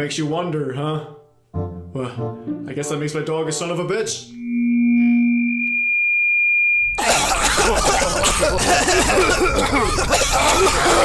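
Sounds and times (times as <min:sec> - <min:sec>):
steady high-pitched tone: 0:04.2 - 0:07.7
audience coughing: 0:07.0 - 0:11.0.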